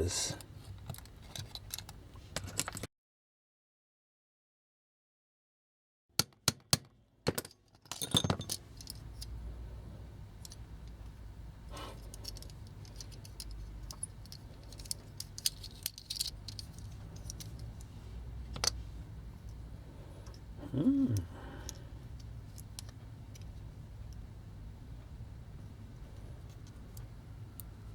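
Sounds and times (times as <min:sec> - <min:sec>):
toy parts clattering: 0:07.3 - 0:09.3, 0:12.0 - 0:17.9
low steady hum: 0:08.1 - 0:27.9
toy parts clicking: 0:12.0 - 0:17.9.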